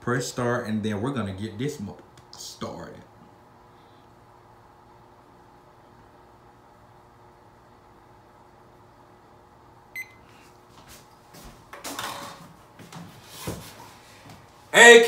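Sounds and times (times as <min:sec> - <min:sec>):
short electronic beep: 0:10.0 - 0:10.2.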